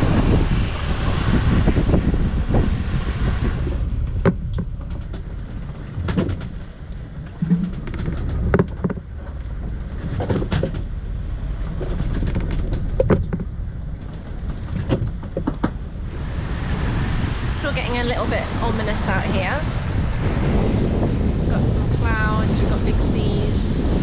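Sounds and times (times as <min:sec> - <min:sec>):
boat low rumble: 0:00.0 - 0:24.0
knocks and clicks: 0:03.6 - 0:16.0.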